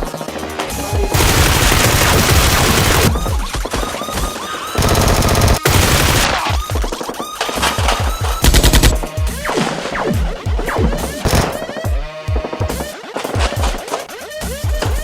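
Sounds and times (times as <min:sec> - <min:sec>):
background music: 0:00.0 - 0:15.0
automatic gunfire: 0:01.1 - 0:03.2, 0:04.8 - 0:06.7.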